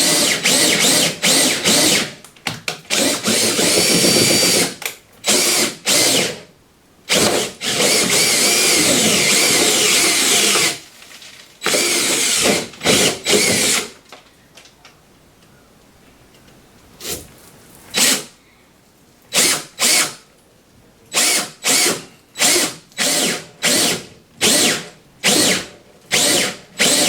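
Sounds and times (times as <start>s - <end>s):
power drill whining in bursts: 0.0s - 2.2s, 2.9s - 6.5s, 7.1s - 10.8s, 11.6s - 14.0s, 19.4s - 20.2s, 21.1s - 27.0s.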